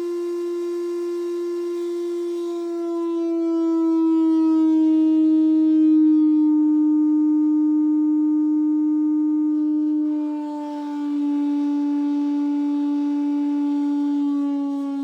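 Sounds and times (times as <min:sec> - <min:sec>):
buzzy frequency sweep tone: 0:06.6 - 0:14.8.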